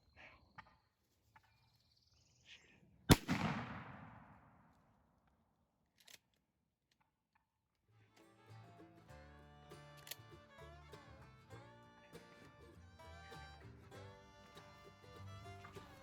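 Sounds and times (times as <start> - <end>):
shotgun shot echoing: 3.1 - 4.6.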